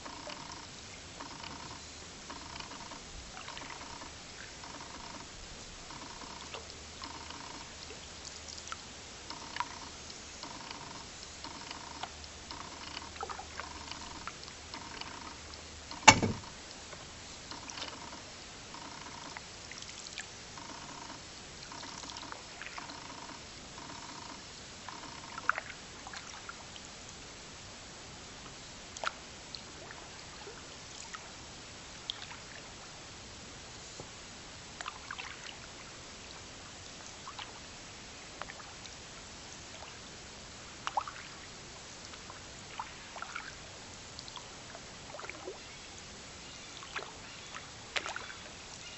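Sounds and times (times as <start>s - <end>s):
paddle knocking against canoe: 15.9s - 16.5s
water dripping off paddle: 48.0s - 48.3s.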